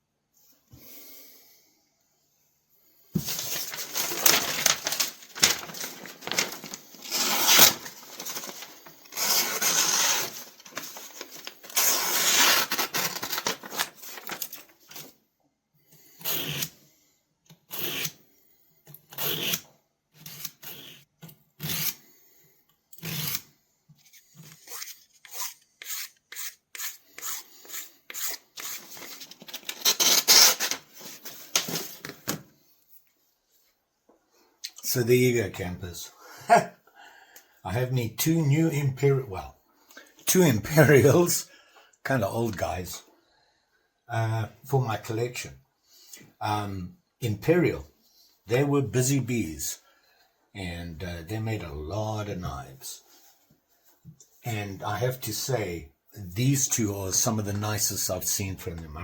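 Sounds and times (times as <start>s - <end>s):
knife blade rasping on sharpener: 24.7s - 28.8s.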